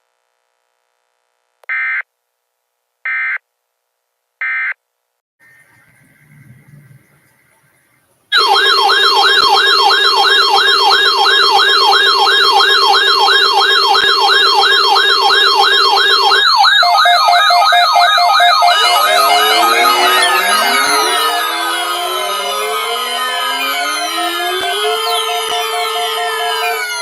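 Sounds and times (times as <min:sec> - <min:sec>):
electronic siren warble: 0:05.5 - 0:27.0
steady low tone: 0:05.6 - 0:08.1
steady higher tone: 0:18.5 - 0:27.0.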